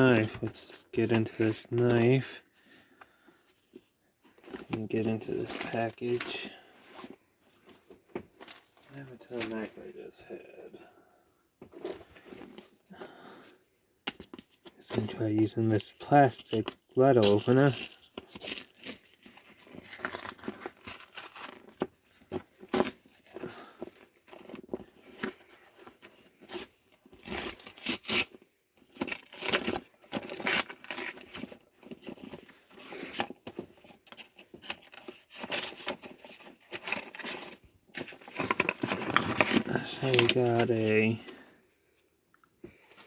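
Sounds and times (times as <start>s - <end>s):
packaging being cut and torn: 27.2s - 33.3s.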